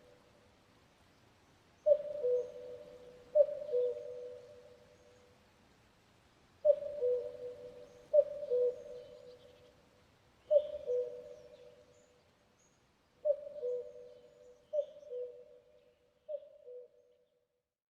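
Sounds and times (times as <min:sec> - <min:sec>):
cuckoo calling: 0:01.8 - 0:04.8, 0:06.6 - 0:09.6, 0:10.5 - 0:11.9, 0:13.2 - 0:15.6.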